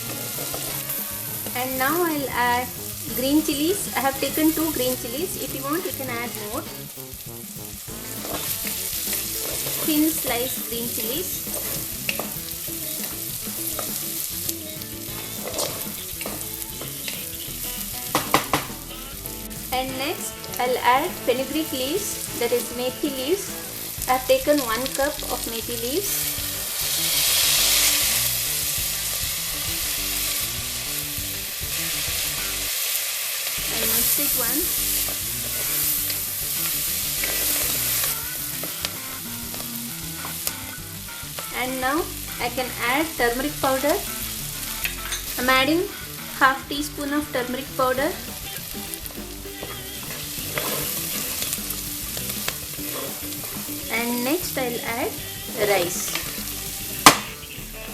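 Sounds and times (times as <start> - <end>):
spatula scraping pot: 0.0 - 32.6, 33.6 - 57.7
food sizzling in oil: 0.0 - 57.9
sharp knocks: 18.1 - 19.0.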